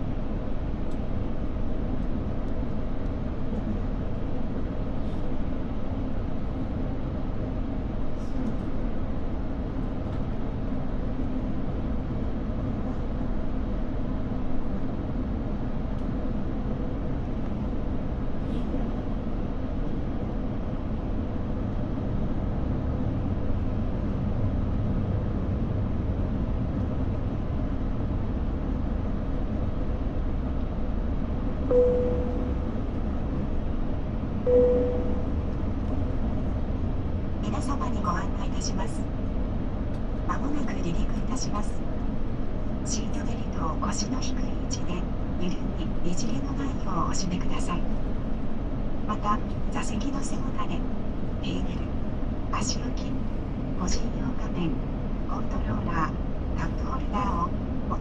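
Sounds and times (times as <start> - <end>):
airliner cabin rumble: 0.0 - 58.0
cabin signal chimes: 31.7 - 32.7, 34.5 - 35.4.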